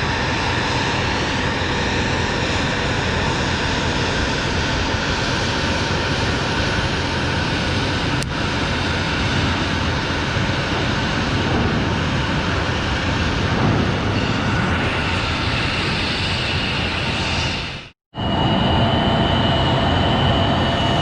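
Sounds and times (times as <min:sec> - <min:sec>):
jet engines running: 0:00.0 - 0:21.0
high-pitched whine: 0:12.0 - 0:21.0.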